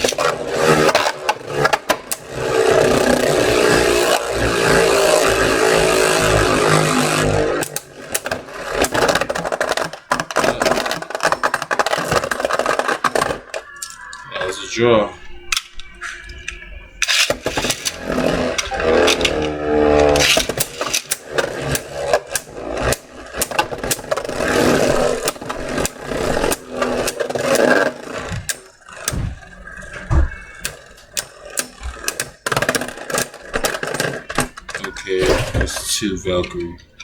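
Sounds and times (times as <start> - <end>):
spinning tops whirring: 0.0 - 37.0
spinning tops clacking together: 17.0 - 34.8.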